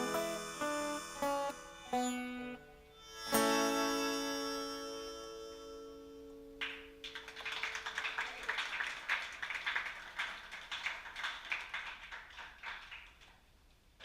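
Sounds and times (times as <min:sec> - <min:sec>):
plucked guitar chord: 0:00.0 - 0:07.0
audience applauding: 0:06.6 - 0:13.5.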